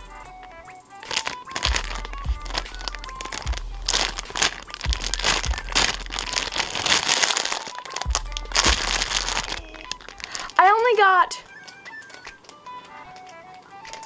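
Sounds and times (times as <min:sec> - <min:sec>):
plastic crinkling: 0:00.0 - 0:14.0.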